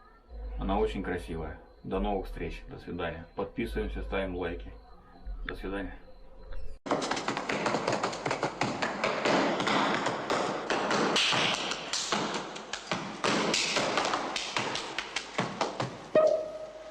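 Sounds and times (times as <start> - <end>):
rapid irregular tapping and clicking: 6.9 - 16.2.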